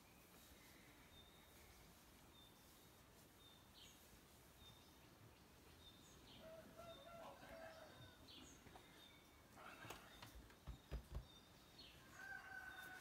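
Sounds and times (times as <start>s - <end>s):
small birds chirping: 0.0s - 13.0s
distant rooster crowing: 6.4s - 8.4s, 12.0s - 13.0s.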